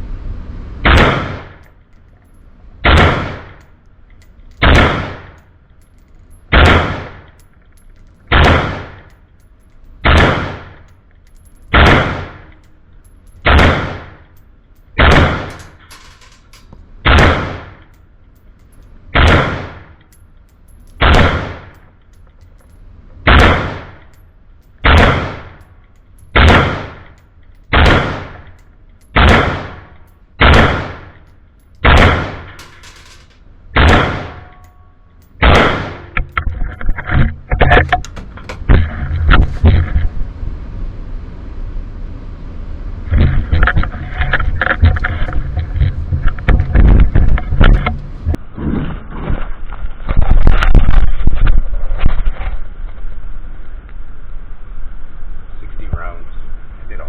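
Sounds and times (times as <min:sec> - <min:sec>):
rifle shots with echo: 0:00.8 - 0:01.6, 0:02.8 - 0:03.6, 0:04.6 - 0:05.4, 0:06.5 - 0:07.3, 0:08.3 - 0:09.1, 0:10.0 - 0:10.9, 0:11.7 - 0:12.5, 0:13.4 - 0:14.2, 0:15.0 - 0:16.3, 0:17.0 - 0:17.8, 0:19.1 - 0:20.0, 0:21.0 - 0:21.7, 0:23.2 - 0:24.0, 0:24.8 - 0:25.6, 0:26.4 - 0:28.5, 0:29.2 - 0:31.2, 0:31.8 - 0:34.6, 0:35.4 - 0:36.3.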